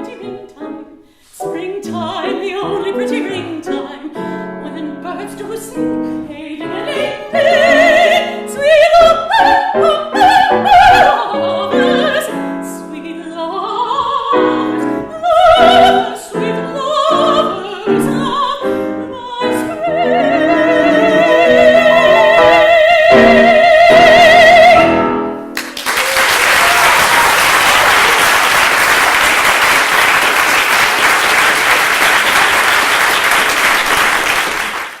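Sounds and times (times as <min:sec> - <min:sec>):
soprano singing: 0:00.0 - 0:25.5
piano accompaniment: 0:00.0 - 0:25.8
audience applause: 0:25.6 - 0:35.0.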